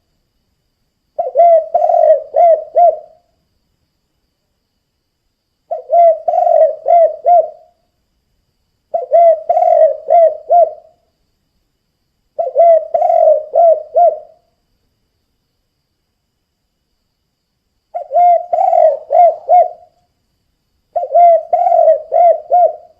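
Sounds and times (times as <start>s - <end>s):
dove cooing: 1.2s - 3.2s, 5.7s - 7.8s, 8.9s - 11.0s, 12.4s - 14.4s, 18.0s - 19.9s, 20.9s - 22.9s.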